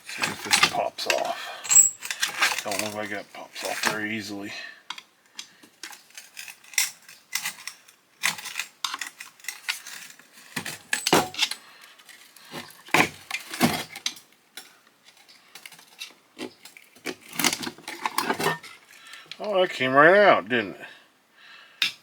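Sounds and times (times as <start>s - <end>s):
metal clinks and scrapes of tools: 0.0s - 4.1s, 5.4s - 19.5s.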